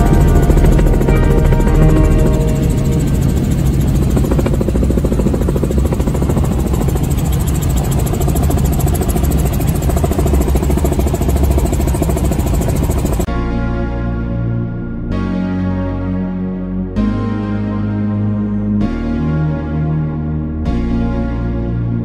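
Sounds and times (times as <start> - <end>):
helicopter rotor and engine: 0.0 - 13.3
music: 0.0 - 22.0.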